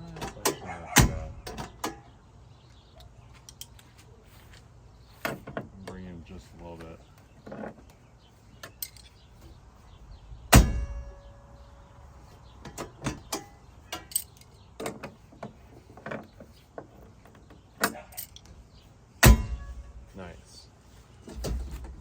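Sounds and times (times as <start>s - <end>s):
metal door clanging shut: 0.1s - 2.1s, 10.5s - 11.3s, 19.2s - 20.0s, 21.3s - 22.0s
door hinge clicks and knocks: 0.2s - 2.1s.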